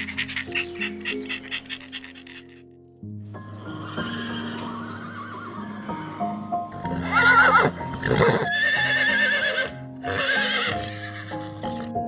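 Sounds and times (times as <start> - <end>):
calm background music: 0.0 - 12.0.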